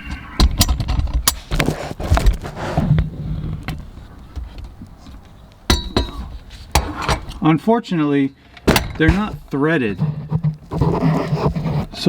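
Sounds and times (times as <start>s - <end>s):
metal bolts clinking: 5.7s - 7.4s
ringing metal knocks: 5.7s - 7.4s.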